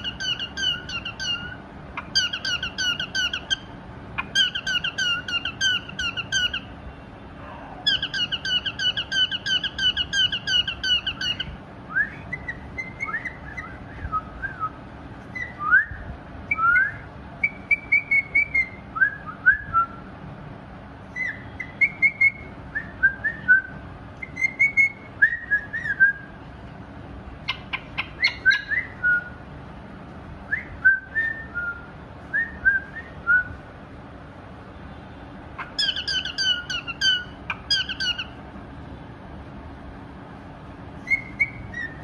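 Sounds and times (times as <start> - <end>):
cockatiel whistling: 0.0 - 3.6, 4.2 - 6.6, 7.9 - 15.9, 16.5 - 19.7, 21.2 - 26.3, 27.5 - 29.4, 35.6 - 38.3, 41.0 - 42.0.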